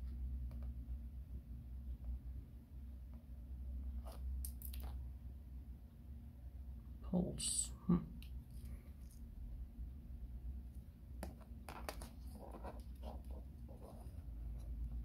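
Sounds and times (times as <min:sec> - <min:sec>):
low steady hum: 0:00.0 - 0:15.0
soft rustling and scraping: 0:11.4 - 0:15.0.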